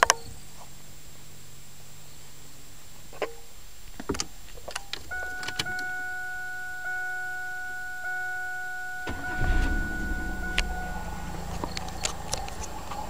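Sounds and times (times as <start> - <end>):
electronic warning tone: 5.1 - 12.6
car engine cranking and starting: 9.0 - 13.0.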